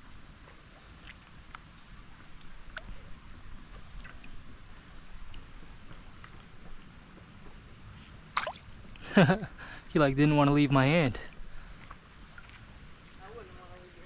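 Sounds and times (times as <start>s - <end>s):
creek water running: 8.4s - 8.8s.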